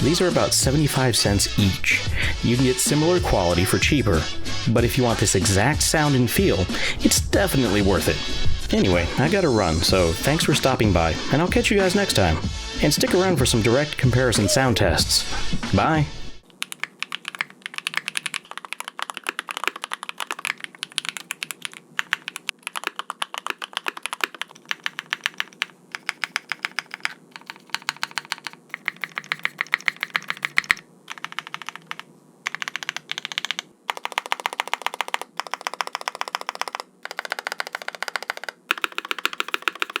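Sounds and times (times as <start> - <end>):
mechanical keyboard typing: 16.5 - 40.0.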